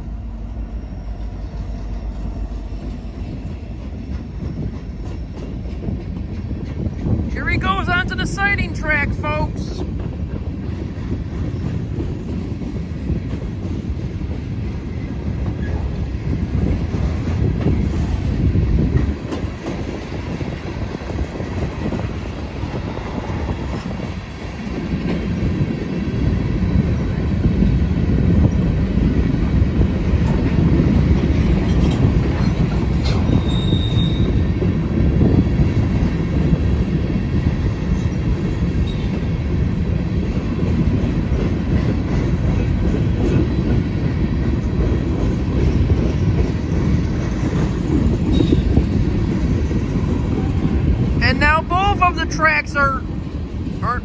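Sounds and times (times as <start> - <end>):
freight train rumbling: 0.0 - 54.0
high wheel squeal: 33.1 - 34.5.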